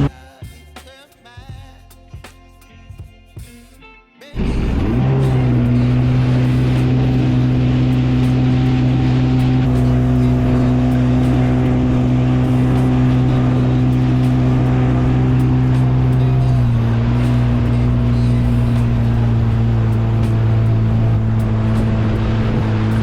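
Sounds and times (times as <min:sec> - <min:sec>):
jet ski engine running: 0:04.4 - 0:23.0.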